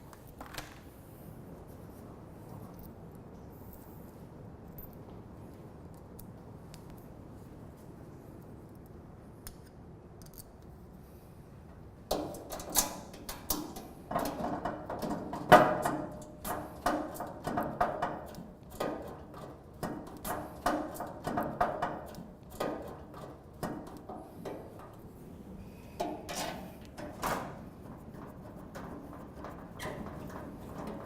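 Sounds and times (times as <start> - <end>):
metal clicks clanks and scrapes: 12.1 - 25.2, 25.9 - 31.0.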